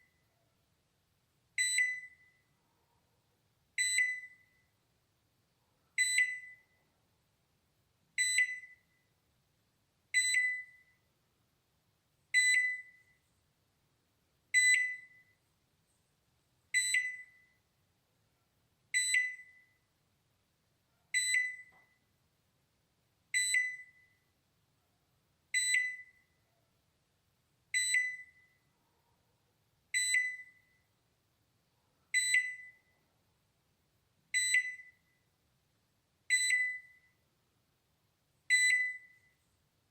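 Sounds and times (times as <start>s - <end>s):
microwave alarm beeping: 1.6s - 2.5s, 3.8s - 4.7s, 6.0s - 6.8s, 8.2s - 9.0s, 10.1s - 11.0s, 12.3s - 13.2s, 14.5s - 15.4s, 16.7s - 17.6s, 18.9s - 19.8s, 21.2s - 22.0s, 23.3s - 24.2s, 25.5s - 26.3s, 27.7s - 28.7s, 29.9s - 30.9s, 32.1s - 32.9s, 34.3s - 35.2s, 36.3s - 37.2s, 38.5s - 39.4s.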